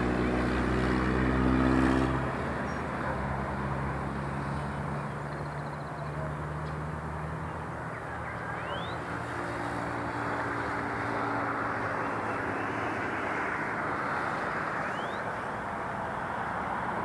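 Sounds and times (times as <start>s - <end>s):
bird chirp: 7.9s - 9.0s, 14.8s - 15.3s.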